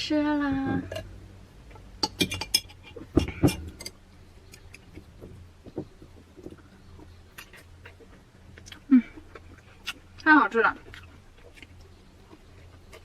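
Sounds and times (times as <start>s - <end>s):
low steady hum: 0.0s - 13.0s
tableware clicks and taps: 2.0s - 4.0s.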